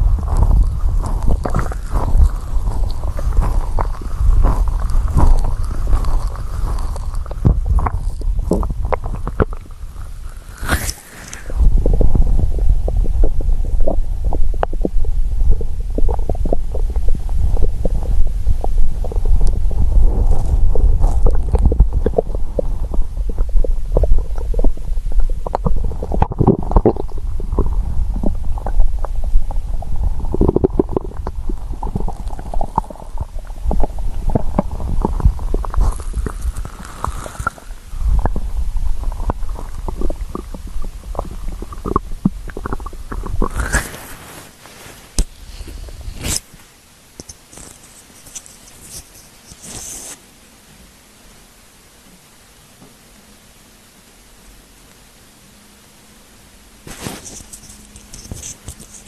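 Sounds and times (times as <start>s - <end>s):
stomach gurgling and rumbling: 0.0s - 50.2s, 56.8s - 59.0s
rustle: 43.4s - 59.0s.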